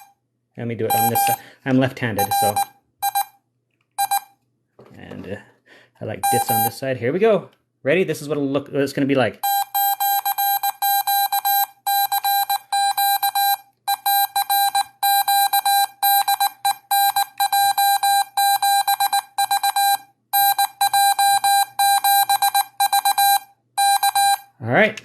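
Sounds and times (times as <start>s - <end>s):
morse code beeps: 0.9s - 1.4s, 2.1s - 3.4s, 4.0s - 4.3s, 6.2s - 6.8s, 9.4s - 24.5s.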